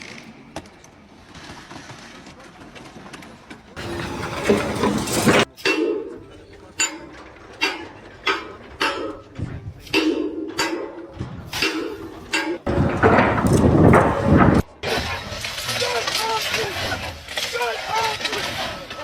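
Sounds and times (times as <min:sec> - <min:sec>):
sharp metallic clanks: 0:03.8 - 0:16.6.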